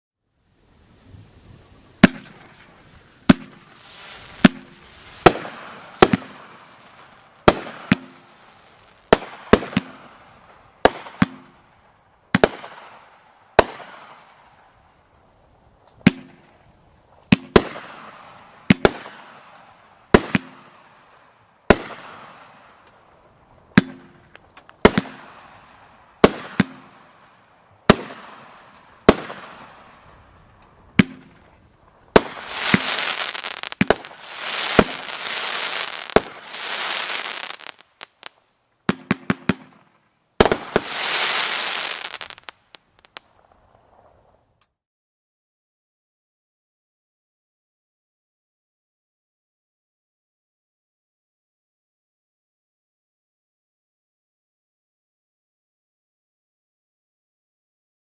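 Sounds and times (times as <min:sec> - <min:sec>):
crackling hiss: 0:00.4 - 0:44.6
firework bangs: 0:01.0 - 0:11.7, 0:12.3 - 0:14.7, 0:17.2 - 0:22.8, 0:23.8 - 0:44.2.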